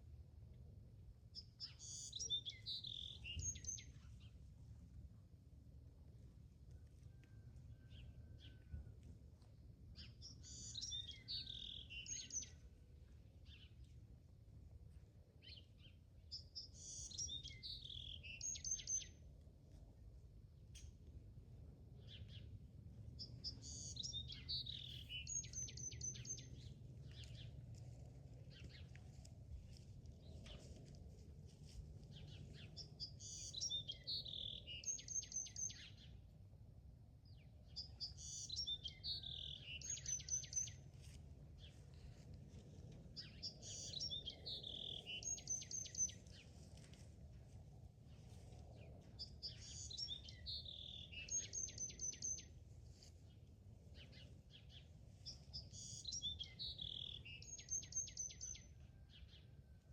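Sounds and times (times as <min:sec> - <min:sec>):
songbird singing with trill: 0:01.4 - 0:04.0, 0:10.0 - 0:12.6, 0:15.4 - 0:19.2, 0:23.2 - 0:27.5, 0:32.1 - 0:36.2, 0:37.3 - 0:40.9, 0:43.2 - 0:46.4, 0:49.2 - 0:52.6, 0:54.0 - 0:59.5
low outdoor rumble: 0:02.6 - 0:16.8, 0:19.1 - 0:33.3, 0:39.0 - 0:55.8.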